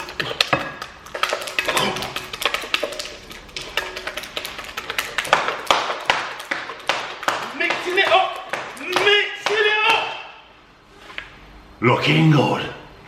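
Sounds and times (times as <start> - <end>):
utensil tapping a bowl: 0.0 - 10.1.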